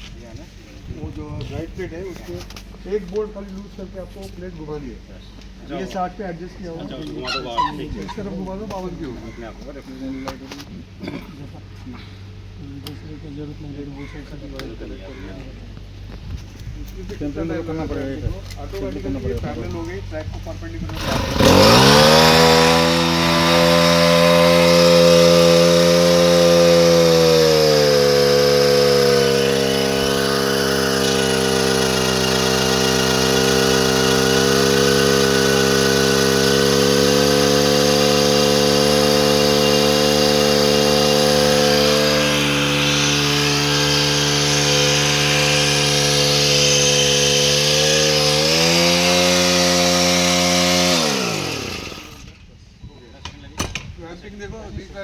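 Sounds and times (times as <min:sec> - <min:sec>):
rail drilling machine cutting steel: 0:20.9 - 0:52.3.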